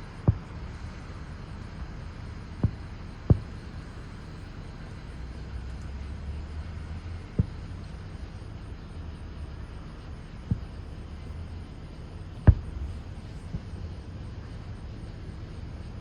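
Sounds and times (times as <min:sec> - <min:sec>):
distant firework booms: 0:00.0 - 0:04.8, 0:12.4 - 0:13.8
steady low rumble: 0:00.0 - 0:16.0.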